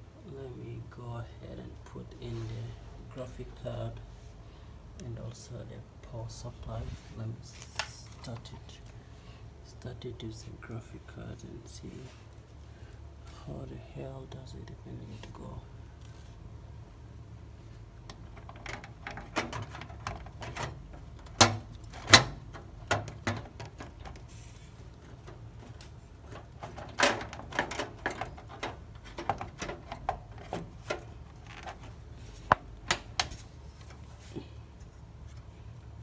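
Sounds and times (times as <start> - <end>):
clicks and knocks on metal case: 18.1 - 24.3, 25.1 - 33.5.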